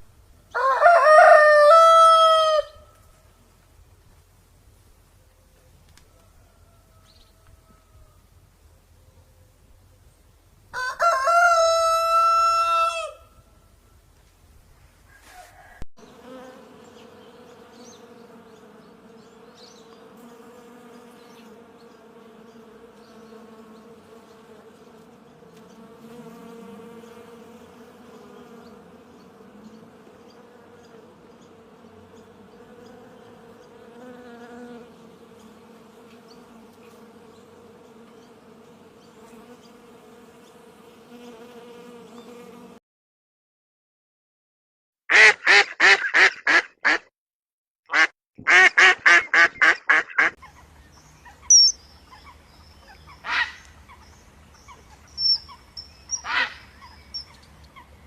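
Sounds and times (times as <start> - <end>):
insects buzzing: 16.0 - 42.8, 50.5 - 58.0.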